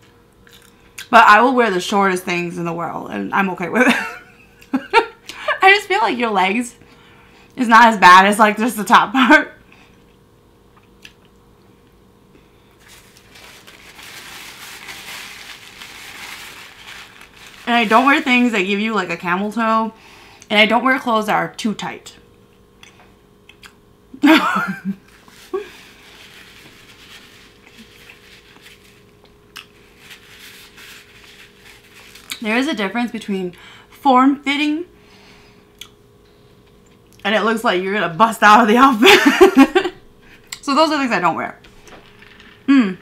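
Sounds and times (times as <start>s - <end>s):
chewing food: 0.4s - 1.1s
paper food wrapper crinkling: 12.8s - 18.9s, 25.1s - 32.5s.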